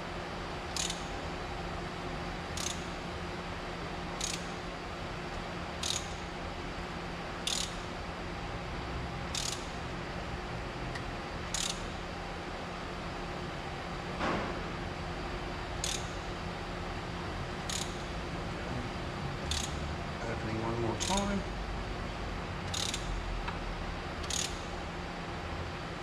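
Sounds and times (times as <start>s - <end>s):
steady low hum: 0.0s - 26.0s
ratchet wrench clicking: 0.7s - 1.1s, 2.6s - 2.9s, 4.2s - 4.6s, 5.8s - 6.2s, 7.4s - 7.8s, 9.3s - 9.8s, 11.5s - 11.9s, 15.8s - 16.2s, 17.7s - 18.1s, 19.5s - 19.8s, 21.0s - 21.4s, 22.7s - 23.1s, 24.2s - 24.6s.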